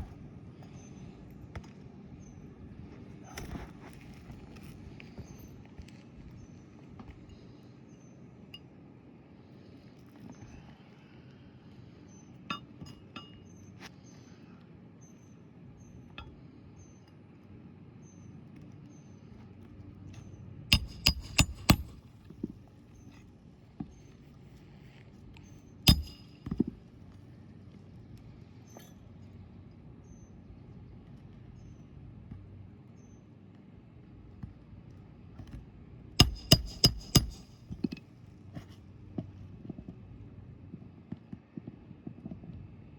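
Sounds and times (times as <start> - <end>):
hammer striking metal: 20.7 - 22.0, 25.9 - 26.7, 36.2 - 37.8.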